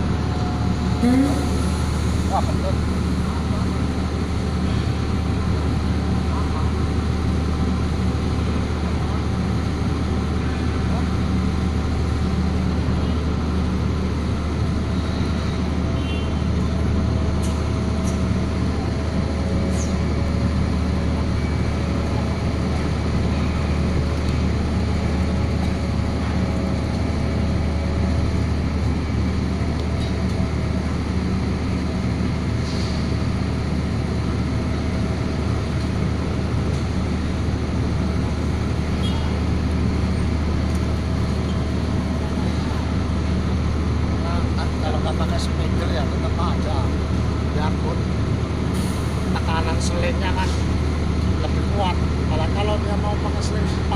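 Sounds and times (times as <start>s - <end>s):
motor engine droning: 0.0s - 5.1s.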